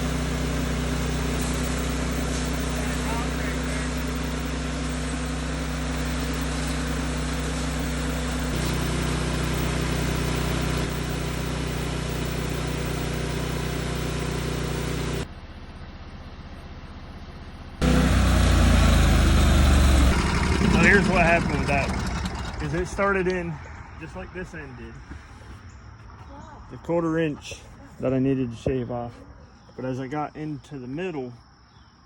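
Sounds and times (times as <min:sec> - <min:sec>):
sawmill engine running: 0:00.0 - 0:29.1.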